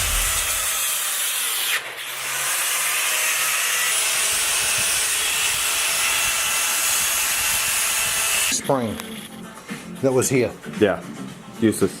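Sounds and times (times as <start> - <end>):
angle grinder cutting steel: 0.0 - 8.6.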